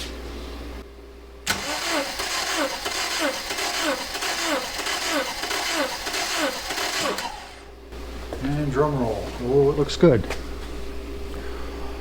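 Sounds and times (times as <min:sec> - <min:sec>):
starter motor cranking engine: 0:01.5 - 0:07.7.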